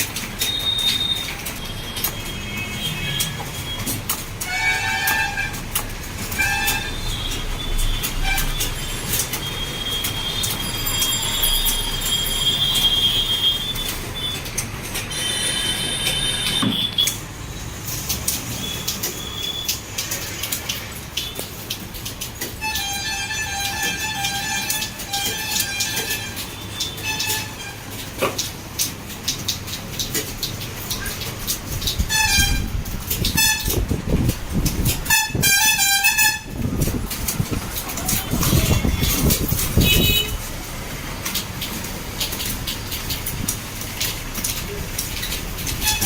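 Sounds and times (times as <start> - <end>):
low traffic rumble: 0.0 - 46.0
vehicle horns honking: 4.4 - 5.6, 6.3 - 14.4, 15.0 - 17.2, 32.1 - 33.8, 35.0 - 36.6, 38.1 - 40.4.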